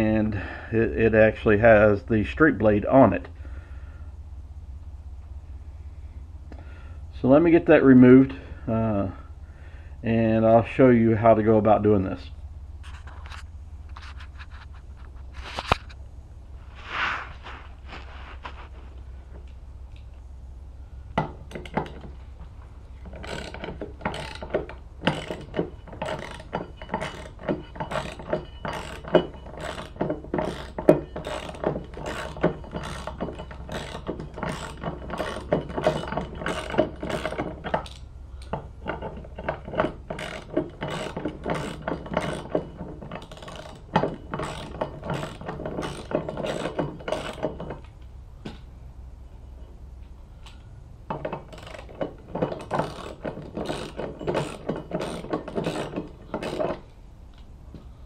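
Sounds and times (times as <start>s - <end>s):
ratchet wrench clicking: 23.0s - 38.6s, 39.4s - 42.6s, 43.2s - 47.9s, 51.4s - 57.5s.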